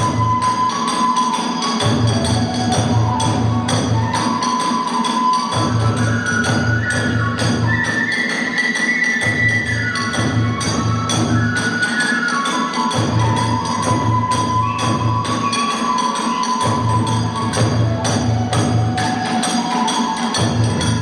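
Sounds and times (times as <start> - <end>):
hand cymbals clashing: 0.0 - 21.0
sustained flute melody: 0.0 - 21.0
quick steady drum beats: 16.6 - 21.0.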